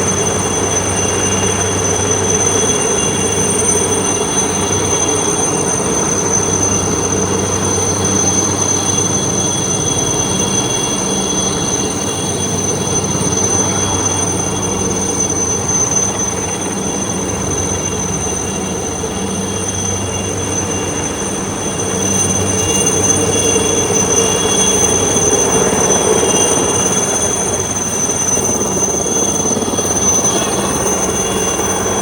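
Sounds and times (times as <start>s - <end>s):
high-pitched machine whines: 0.0s - 32.0s.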